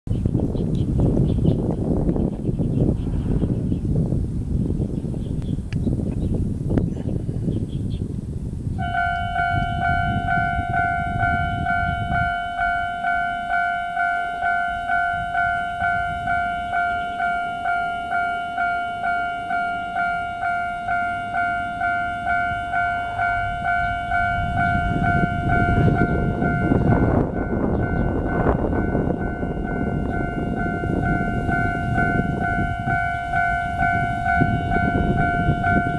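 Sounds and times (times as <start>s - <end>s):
low rumble: 0.9s - 35.9s
level crossing bell dinging: 8.8s - 35.9s.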